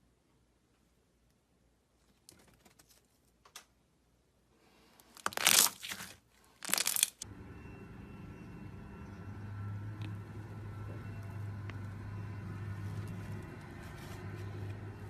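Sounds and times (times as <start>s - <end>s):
slime being handled: 5.1s - 7.2s
slime crackling and tearing: 5.1s - 7.2s
steady low hum: 7.2s - 15.0s.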